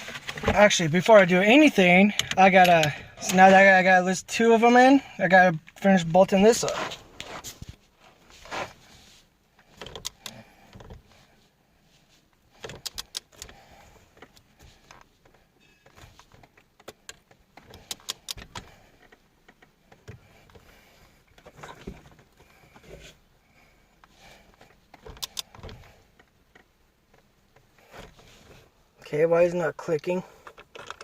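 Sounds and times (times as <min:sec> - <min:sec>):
wrench clicking on bolts: 0:09.8 - 0:10.4, 0:12.6 - 0:13.6, 0:16.8 - 0:18.6, 0:25.0 - 0:25.8.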